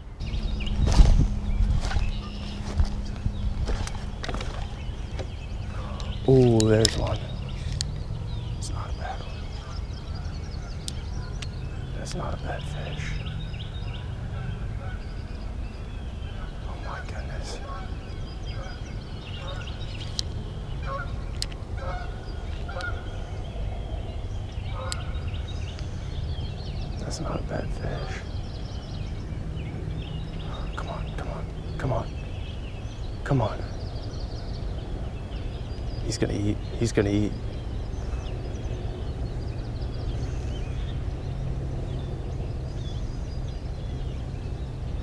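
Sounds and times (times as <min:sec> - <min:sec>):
small birds chirping: 0:00.0 - 0:45.0
steady low rumble: 0:00.0 - 0:45.0
bird honking: 0:01.5 - 0:06.2, 0:09.2 - 0:11.4, 0:13.2 - 0:20.1, 0:20.7 - 0:23.4, 0:24.6 - 0:26.0, 0:30.0 - 0:32.0.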